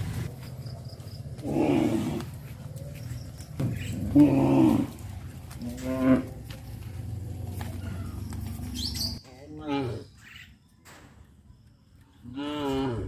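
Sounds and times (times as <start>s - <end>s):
cows mooing: 1.4s - 2.4s, 3.9s - 6.5s.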